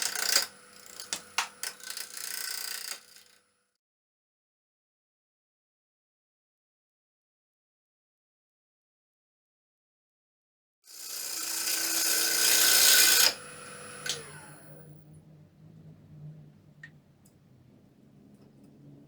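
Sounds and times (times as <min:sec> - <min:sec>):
power tool cutting wood: 0:00.0 - 0:03.4, 0:10.9 - 0:15.0
faint low motor hum: 0:11.7 - 0:19.0.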